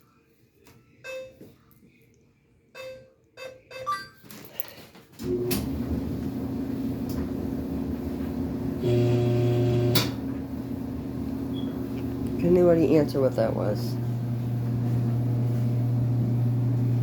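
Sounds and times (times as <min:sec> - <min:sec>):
clothes dryer humming drone: 0:05.1 - 0:17.0.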